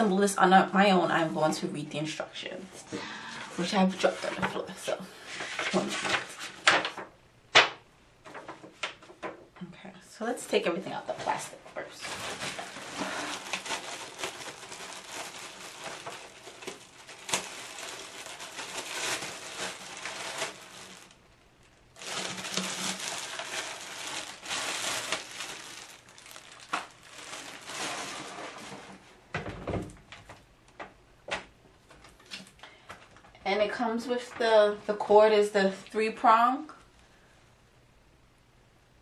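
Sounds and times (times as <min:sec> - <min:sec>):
plastic bags crinkling: 0:11.9 - 0:29.1.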